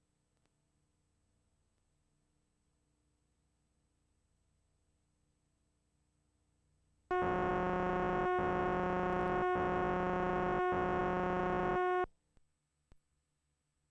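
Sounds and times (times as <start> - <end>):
electronic buzzing tone: 7.1 - 12.1.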